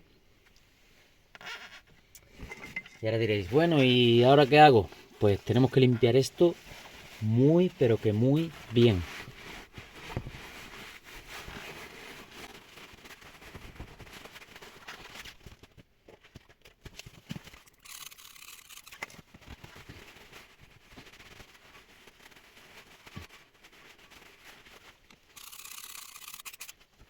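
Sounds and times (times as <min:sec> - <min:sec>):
rubbing and scraping: 0:01.4 - 0:15.7
small clicks: 0:25.3 - 0:26.8.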